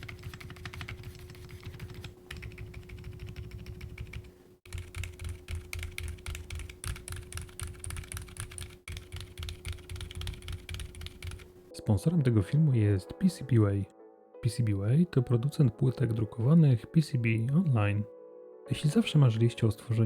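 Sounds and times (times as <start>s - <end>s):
typing on mechanical keyboard: 0.0s - 11.5s.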